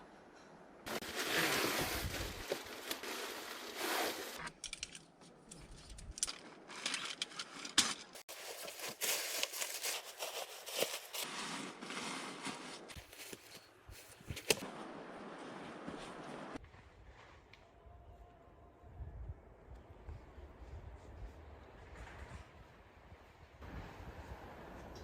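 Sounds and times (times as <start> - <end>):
rustling and crinkling handling: 0.9 - 14.6.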